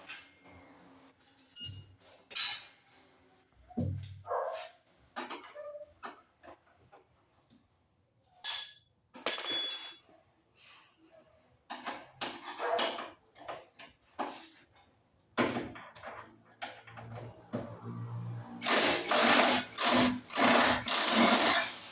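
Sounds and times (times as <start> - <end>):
metal tools clinking: 1.2 - 2.8, 8.4 - 10.2.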